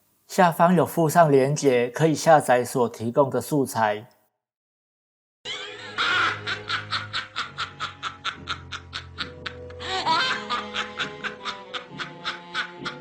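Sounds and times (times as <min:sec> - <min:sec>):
witch cackling: 0:05.5 - 0:13.0.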